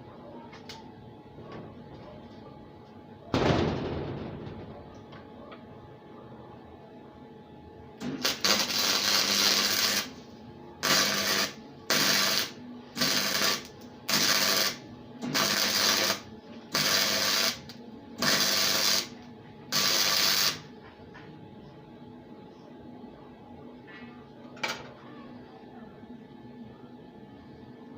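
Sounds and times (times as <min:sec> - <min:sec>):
low welder hum: 0:00.0 - 0:22.7
electric welder crackling hiss: 0:08.0 - 0:10.2, 0:10.8 - 0:19.1, 0:19.7 - 0:20.7.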